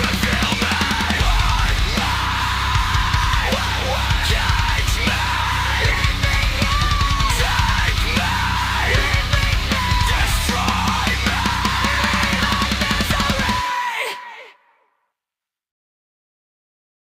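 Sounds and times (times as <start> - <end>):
heavy metal music: 0.0 - 14.2.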